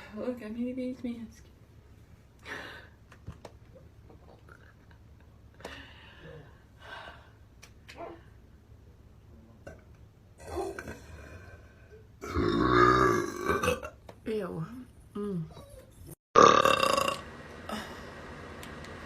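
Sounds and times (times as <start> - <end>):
loud low burp: 10.4 - 11.6, 12.2 - 14.0, 16.4 - 17.9.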